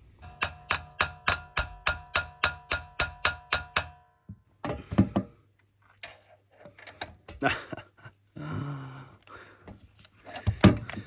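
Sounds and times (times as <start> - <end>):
hand tool tapping on metal: 0.2 - 5.3.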